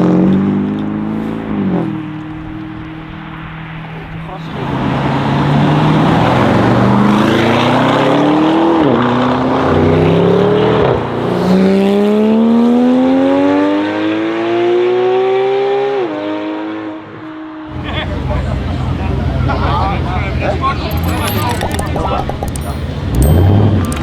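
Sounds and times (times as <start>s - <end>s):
car engine accelerating: 20.1s - 24.0s.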